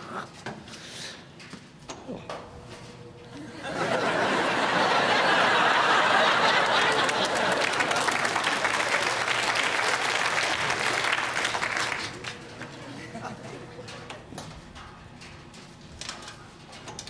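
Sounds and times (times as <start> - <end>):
audience applauding: 3.8 - 12.4.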